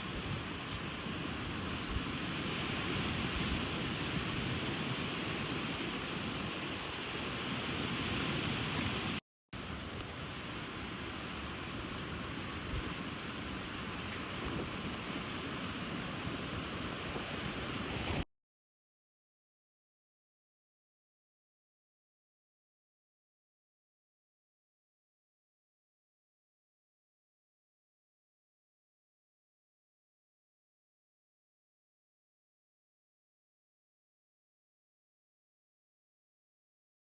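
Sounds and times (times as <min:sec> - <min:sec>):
rushing outdoor ambience: 0:00.0 - 0:18.2.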